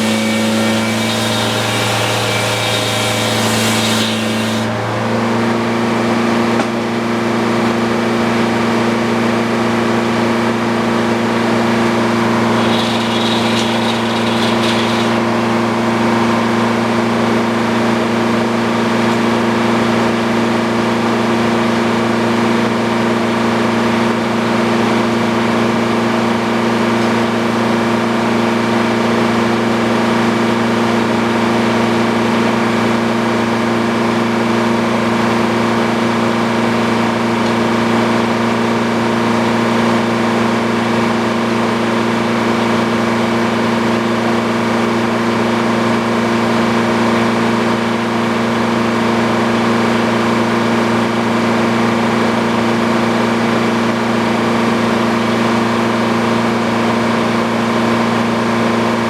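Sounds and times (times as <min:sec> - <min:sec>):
sawmill power unit humming: 0:00.0 - 0:05.3, 0:11.9 - 0:16.4.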